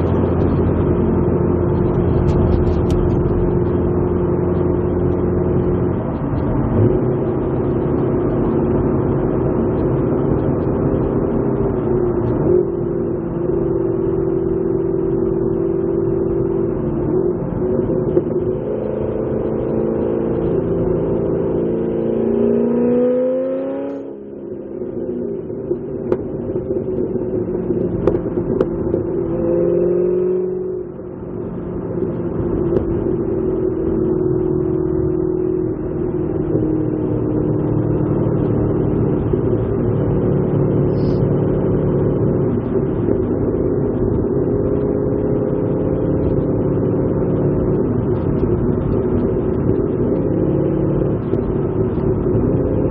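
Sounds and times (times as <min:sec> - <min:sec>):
sports car engine accelerating: 0:00.0 - 0:52.9.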